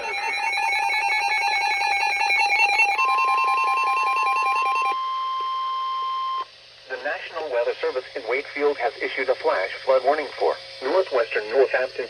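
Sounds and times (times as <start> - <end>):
warbling electronic alarm: 0.0 - 6.4
steady warning tone: 0.0 - 6.5.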